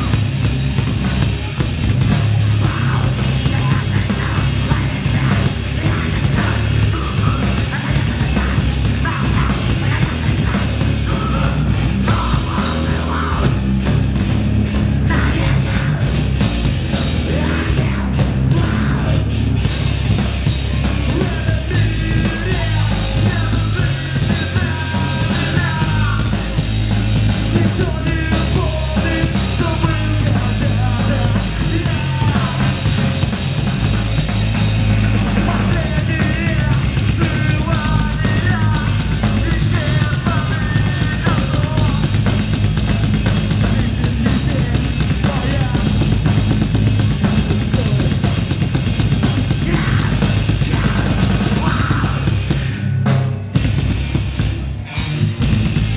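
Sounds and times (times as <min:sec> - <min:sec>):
rock band playing live: 0:00.0 - 0:55.9
person singing: 0:01.0 - 0:13.6, 0:15.0 - 0:16.2, 0:16.9 - 0:19.3, 0:20.6 - 0:46.4, 0:47.2 - 0:48.4, 0:49.2 - 0:52.5.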